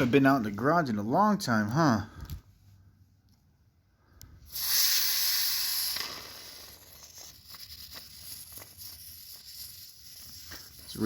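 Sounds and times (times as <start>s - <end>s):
aerosol foam spraying hiss: 4.5s - 11.0s.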